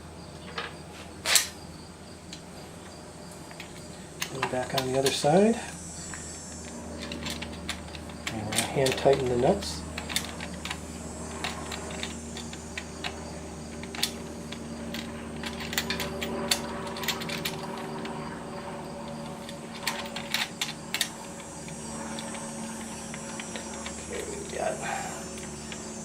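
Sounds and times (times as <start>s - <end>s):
steady hum: 0.0s - 26.0s
metal hardware clicking and tapping: 6.1s - 10.8s.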